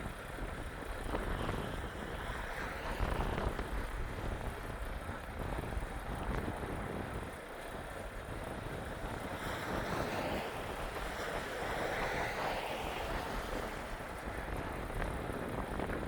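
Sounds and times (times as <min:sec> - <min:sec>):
truck engine and tyres rumbling: 0:00.0 - 0:16.0
wind and road noise hissing: 0:00.0 - 0:16.0.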